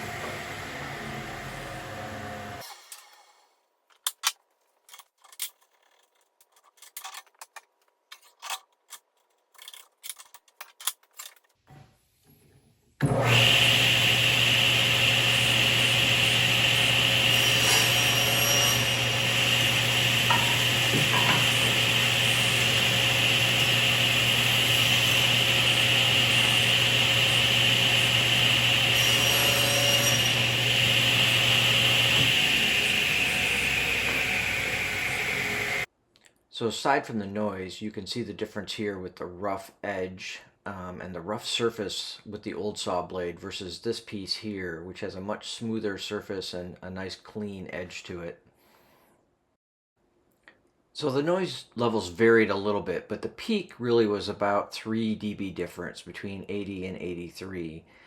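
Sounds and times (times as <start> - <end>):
table saw running: 0.0 - 2.8, 13.0 - 35.9.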